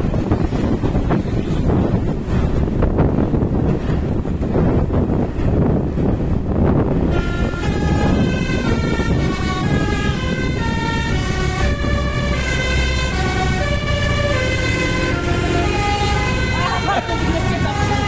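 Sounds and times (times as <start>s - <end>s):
engine and road rumble: 0.0s - 18.0s
multi-tone bus horn tune: 7.0s - 18.0s.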